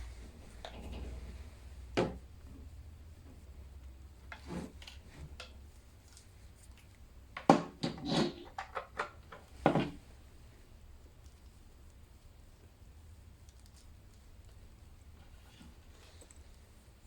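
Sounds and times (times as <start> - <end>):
knocks and clicks of handling: 7.3 - 10.0.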